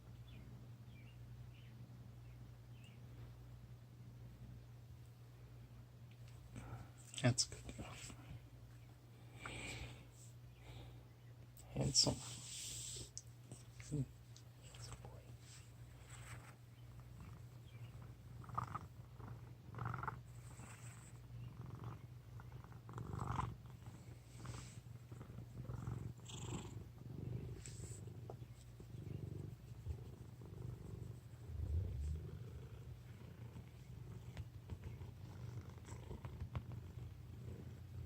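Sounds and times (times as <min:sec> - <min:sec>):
cat purring: 0:12.0 - 0:38.0.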